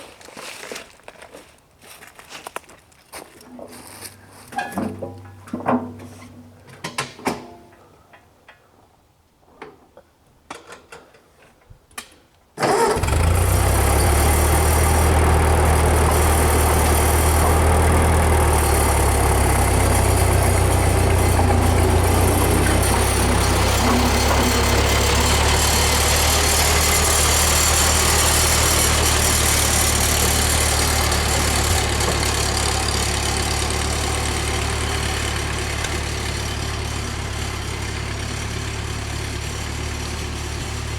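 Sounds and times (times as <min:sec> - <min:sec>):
tractor engine running: 0:12.6 - 0:40.9.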